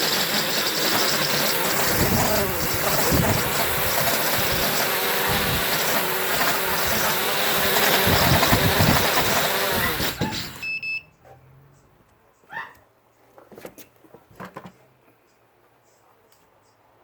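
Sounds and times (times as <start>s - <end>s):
quadcopter motors whining: 0.0s - 10.7s
short electronic beep: 10.6s - 11.1s.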